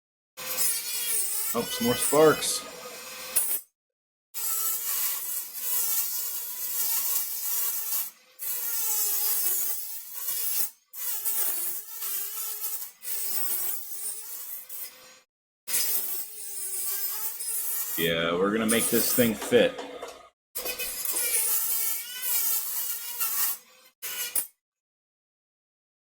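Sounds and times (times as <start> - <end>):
cutting wheel grinding metal: 0.4 - 3.5, 15.8 - 24.5
rotary tool motor whine: 0.4 - 3.5.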